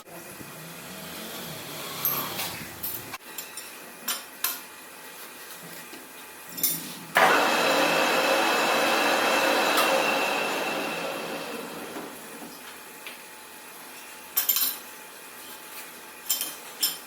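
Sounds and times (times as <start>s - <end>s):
lathe cutting with high whine: 7.2s - 12.1s.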